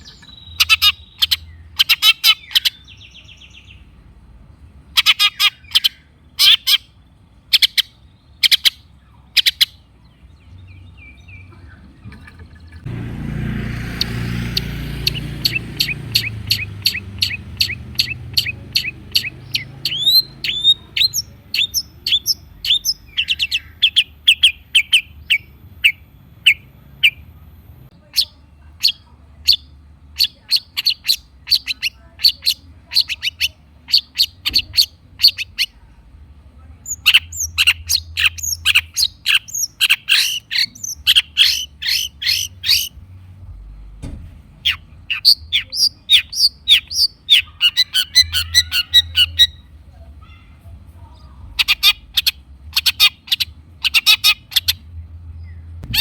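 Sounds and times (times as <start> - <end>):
low rumbling noise: 9.8 - 56.0
quick bird chirps: 13.4 - 27.2, 36.9 - 42.9.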